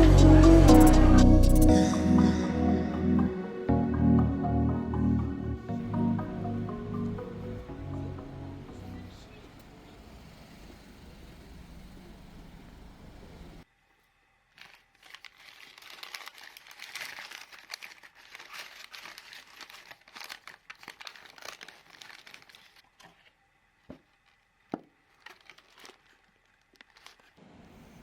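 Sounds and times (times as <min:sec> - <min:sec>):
wrapping crinkling: 0:14.4 - 0:27.4.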